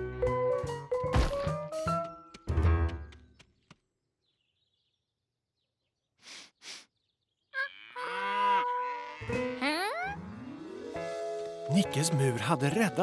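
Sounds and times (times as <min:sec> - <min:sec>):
low thud: 0:01.2 - 0:01.6
short breathy puffs: 0:06.2 - 0:07.0.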